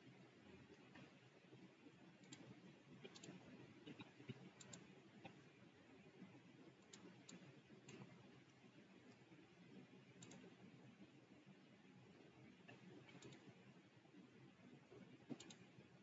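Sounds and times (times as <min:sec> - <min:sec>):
computer mouse clicks: 0:00.0 - 0:05.4, 0:06.6 - 0:10.7, 0:12.6 - 0:13.7, 0:14.9 - 0:15.8.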